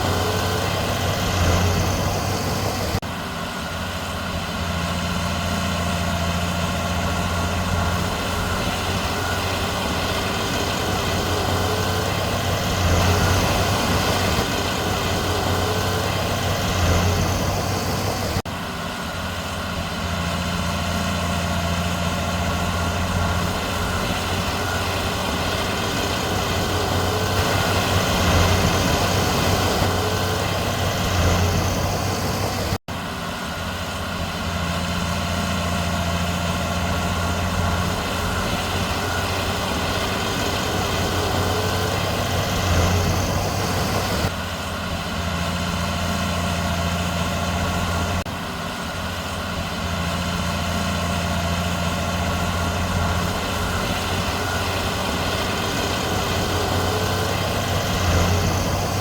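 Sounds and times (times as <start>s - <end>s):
heavy diesel engine running: 0.0s - 59.0s.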